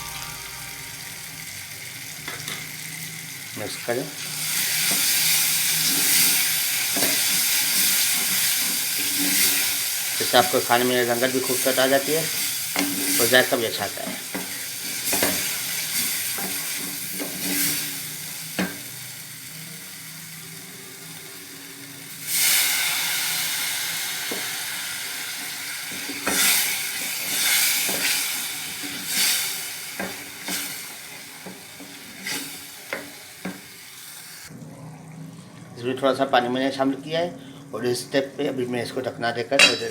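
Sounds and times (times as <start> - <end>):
masala sizzling in hot oil: 0.0 - 39.9
spoon stirring and scraping pan: 4.8 - 10.6, 11.4 - 17.8, 25.4 - 33.8.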